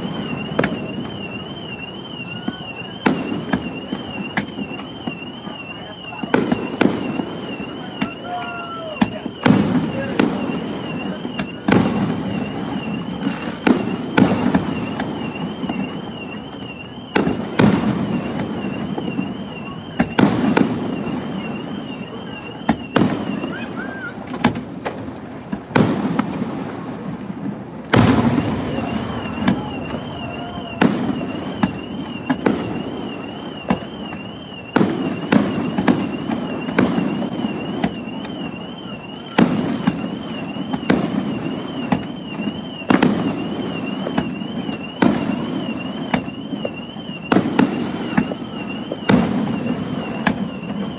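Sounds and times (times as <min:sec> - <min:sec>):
fireworks booming: 0:00.0 - 0:50.9
fireworks crackling: 0:00.0 - 0:50.9
warbling electronic alarm tone: 0:28.6 - 0:34.8.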